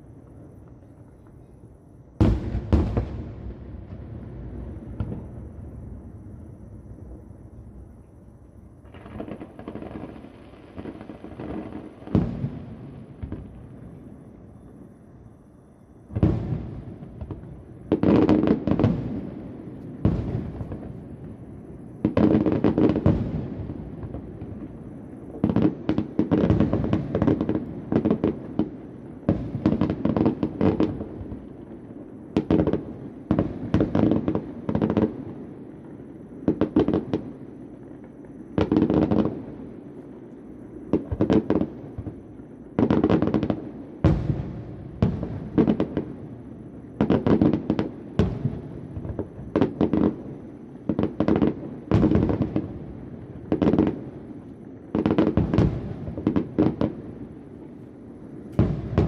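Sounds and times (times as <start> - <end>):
distant firework bursts: 0.0 - 15.0, 16.1 - 59.0
firework crackling: 2.2 - 14.2.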